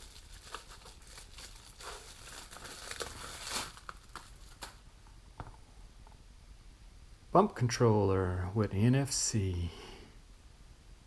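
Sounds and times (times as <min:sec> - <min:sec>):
packaging crinkling and rustling: 0:00.0 - 0:04.8.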